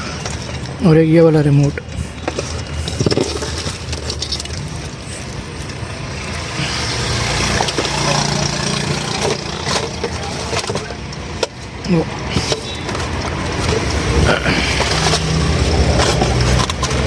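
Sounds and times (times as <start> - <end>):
traffic engine hum: 0.0 - 17.0
faint voices: 6.5 - 16.6.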